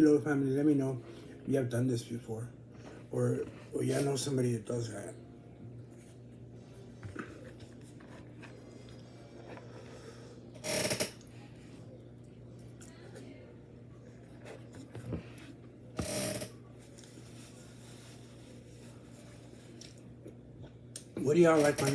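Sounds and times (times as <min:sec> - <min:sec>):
low steady hum: 0:00.0 - 0:21.9
quiet chewing with small clicks: 0:11.2 - 0:13.3, 0:19.7 - 0:21.2.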